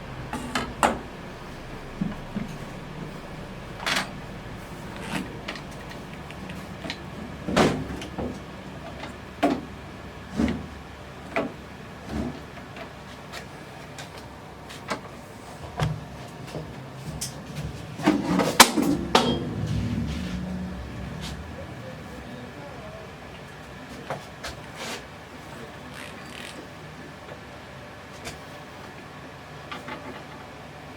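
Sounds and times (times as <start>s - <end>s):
knocks and clunks: 0.0s - 14.2s, 14.8s - 22.3s
faint steady hum: 0.0s - 30.9s.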